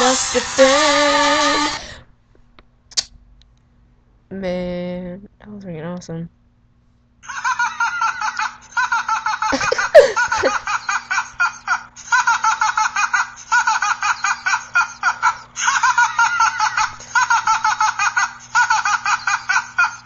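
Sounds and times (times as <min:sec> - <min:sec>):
recorded laugh through speakers: 0:07.2 - 0:20.0.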